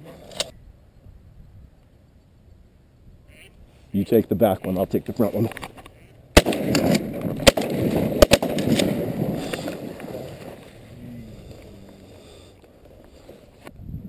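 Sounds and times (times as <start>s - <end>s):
shotgun shots: 6.4s - 10.6s.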